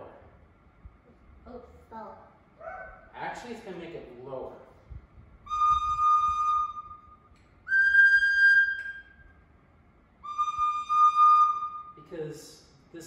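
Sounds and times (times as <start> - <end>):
recorder playing held notes: 5.5 - 9.2, 10.2 - 12.0.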